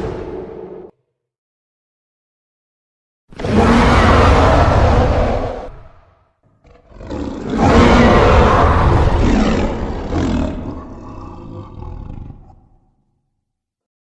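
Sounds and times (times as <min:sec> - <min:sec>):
long rough monster roar: 0:03.4 - 0:05.7, 0:06.7 - 0:12.6.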